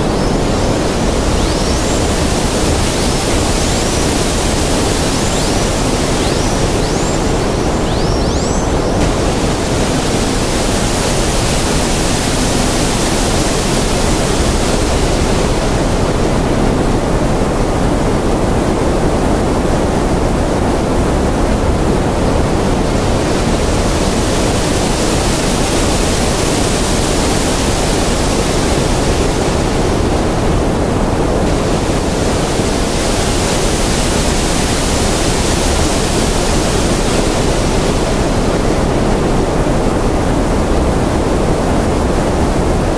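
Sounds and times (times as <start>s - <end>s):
loud rushing space hiss: 0.0s - 19.3s, 20.3s - 42.9s.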